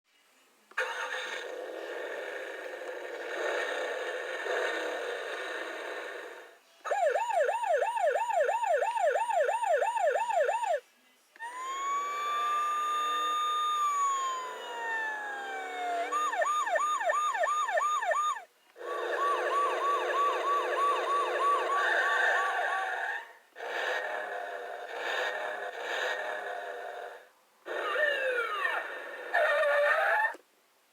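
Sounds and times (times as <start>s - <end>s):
police siren wail: 6.9s - 10.8s, 11.4s - 23.4s, 27.7s - 30.4s
police siren yelp: 6.9s - 10.8s, 11.4s - 23.4s, 27.8s - 30.4s.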